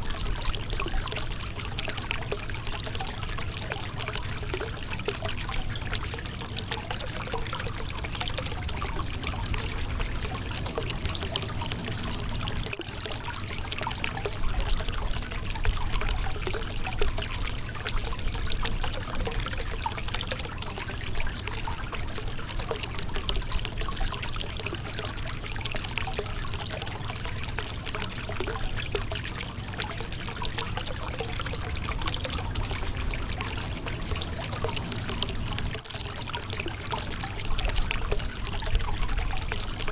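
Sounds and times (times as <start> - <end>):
river water babbling over rocks: 31.0 - 35.8.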